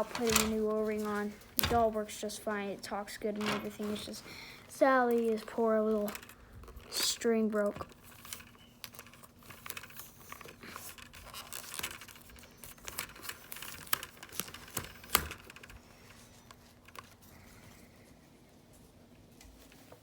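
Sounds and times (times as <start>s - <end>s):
plastic toy clicks and scratches: 5.0s - 15.8s.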